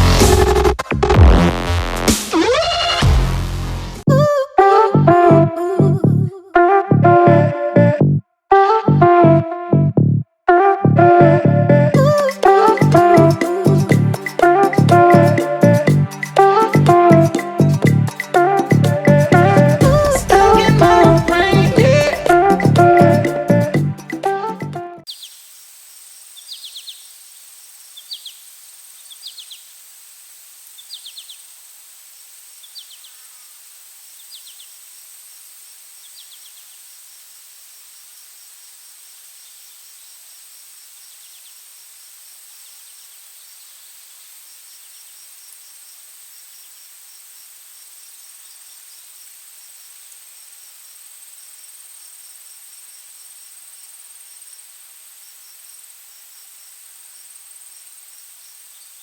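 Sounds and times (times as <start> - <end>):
pulsing insect chirp: 25.1 - 59.0.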